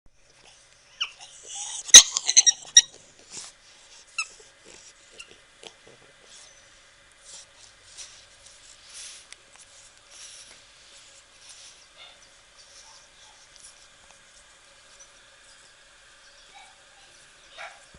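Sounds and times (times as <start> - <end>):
faint rustles and clicks: 0.2 - 17.9
pet animal squeaky cries: 0.9 - 3.0.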